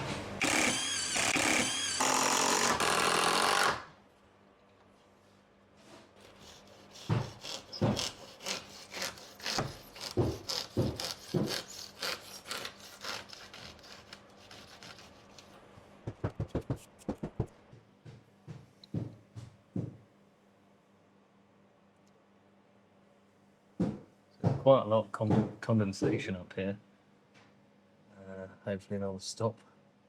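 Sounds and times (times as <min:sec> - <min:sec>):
rubbing and rasping on wood: 0:06.2 - 0:17.5
sharp taps: 0:16.0 - 0:19.2.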